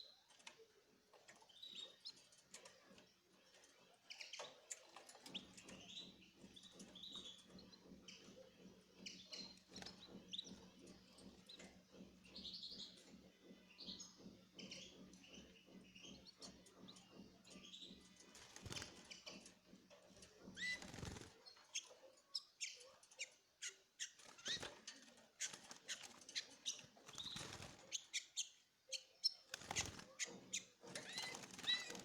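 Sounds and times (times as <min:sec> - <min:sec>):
birds fluttering wings: 0:18.0 - 0:22.0, 0:24.0 - 0:28.3, 0:29.5 - 0:32.0.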